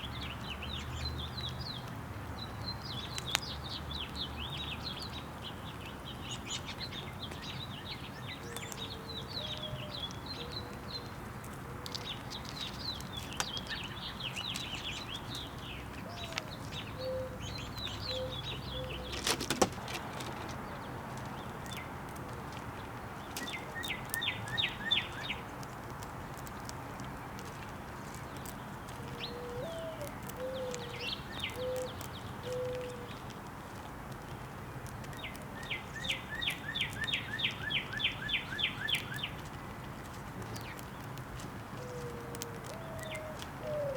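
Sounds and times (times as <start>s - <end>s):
small birds chirping: 0.0s - 43.9s
low wavering bird calls: 16.0s - 19.2s, 29.1s - 33.2s, 41.8s - 43.9s.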